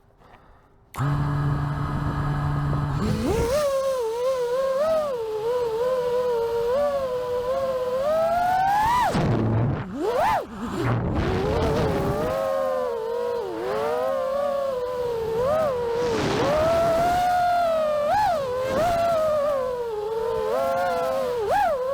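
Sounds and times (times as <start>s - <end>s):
quadcopter motors whining: 1.0s - 21.9s.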